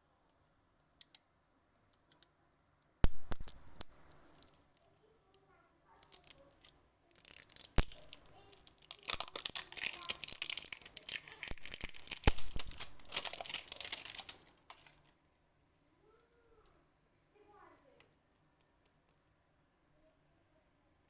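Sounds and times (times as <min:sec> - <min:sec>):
plastic packaging crinkling: 0:06.1 - 0:15.1.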